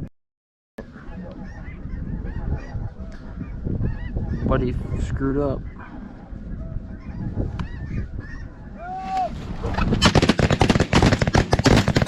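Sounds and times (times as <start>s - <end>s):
geese honking: 0.8s - 4.8s, 5.4s - 9.0s
shotgun fire: 10.0s - 12.0s.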